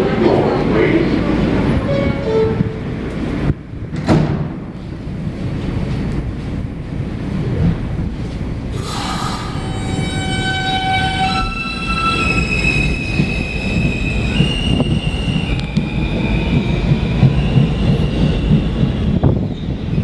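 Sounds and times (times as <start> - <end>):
subway train rumbling: 0.0 - 20.0.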